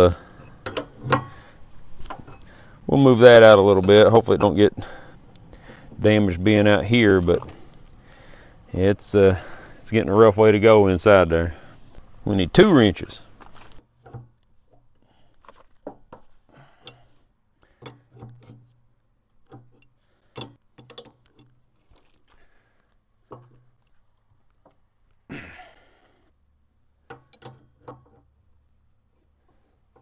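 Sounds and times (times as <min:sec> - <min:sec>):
wrench metal clicks and knocks: 0:00.4 - 0:01.4, 0:17.8 - 0:18.8, 0:19.4 - 0:21.6, 0:27.0 - 0:28.3.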